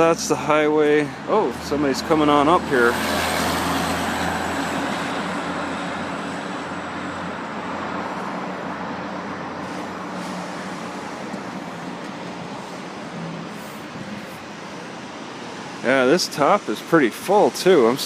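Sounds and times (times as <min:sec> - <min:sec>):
car driving past: 0:01.6 - 0:14.7.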